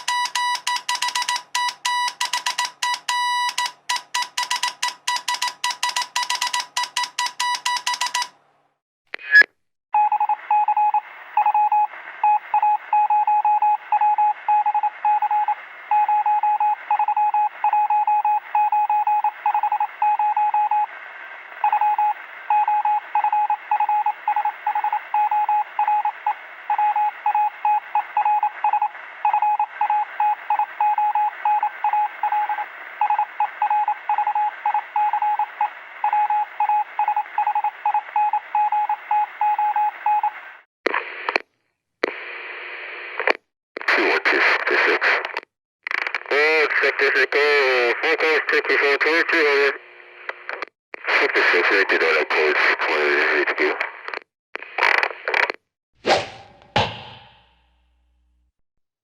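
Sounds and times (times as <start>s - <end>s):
morse code beeps: 0.0s - 8.4s, 10.0s - 20.9s, 21.7s - 40.4s
radio static hiss: 43.1s - 55.6s.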